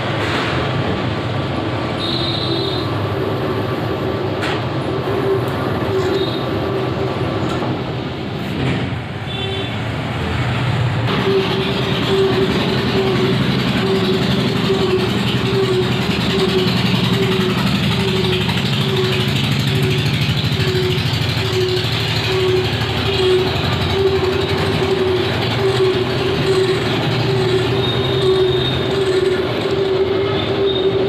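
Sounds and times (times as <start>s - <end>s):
lathe humming: 11.1s - 31.0s.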